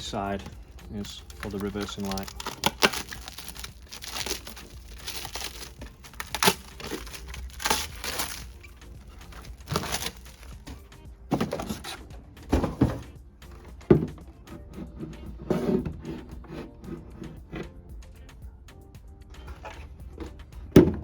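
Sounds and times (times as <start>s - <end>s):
plastic packaging crinkling: 0.0s - 10.8s.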